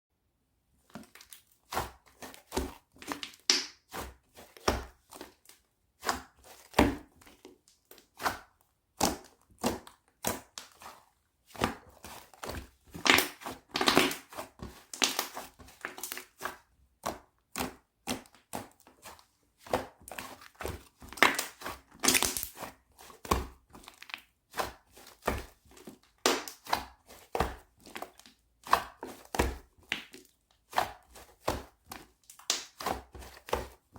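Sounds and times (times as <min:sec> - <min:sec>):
slime popping and crackling: 0:13.0 - 0:14.3, 0:14.9 - 0:16.4, 0:21.2 - 0:22.6, 0:26.2 - 0:26.7, 0:32.3 - 0:32.8.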